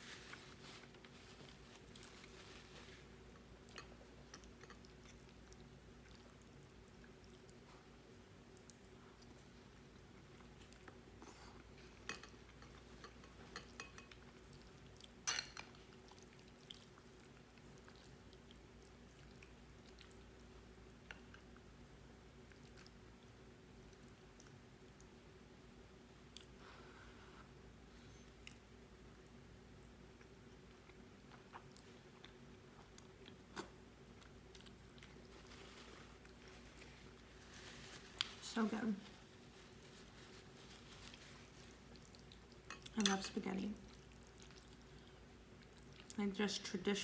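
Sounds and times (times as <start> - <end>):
faint steady hum: 0.0 - 47.0
person chewing: 30.1 - 38.3, 40.4 - 42.9, 43.8 - 46.2.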